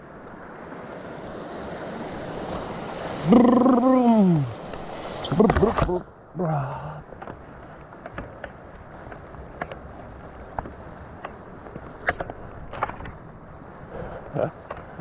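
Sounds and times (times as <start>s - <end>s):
bike tyres clicking and knocking: 7.1s - 15.0s.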